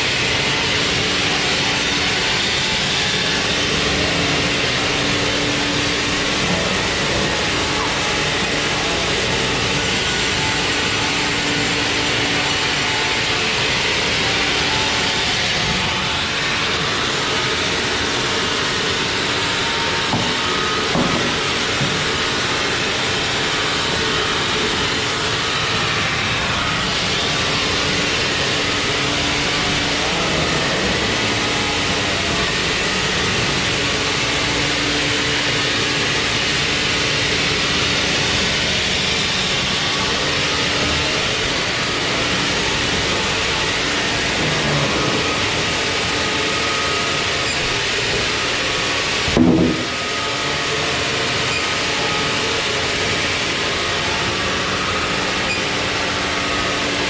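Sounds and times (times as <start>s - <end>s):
sawmill machinery running: 0.0s - 57.0s.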